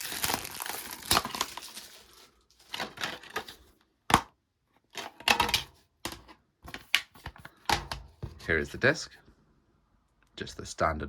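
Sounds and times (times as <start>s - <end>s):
plastic case snapping: 4.1s - 4.4s.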